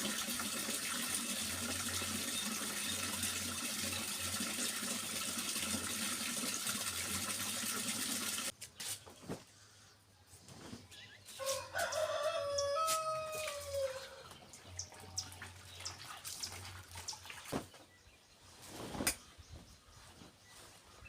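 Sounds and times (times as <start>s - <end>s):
water splashing and dripping: 0.0s - 8.6s, 13.3s - 17.8s
rooster crowing: 11.4s - 14.3s.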